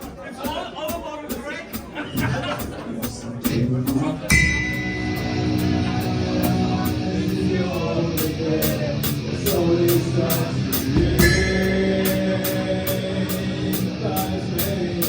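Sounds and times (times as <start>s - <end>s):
crash cymbal: 4.3s - 6.8s
cymbal strokes: 4.3s - 7.5s
distorted guitar chords: 4.3s - 15.0s.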